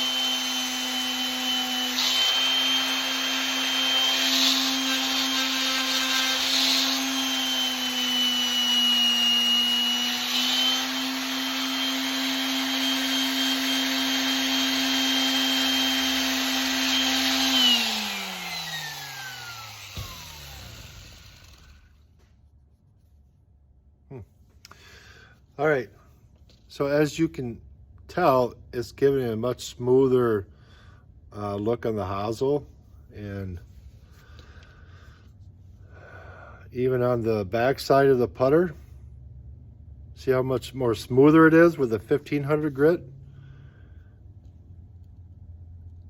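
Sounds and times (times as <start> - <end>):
electric sander running: 0.0 - 22.0.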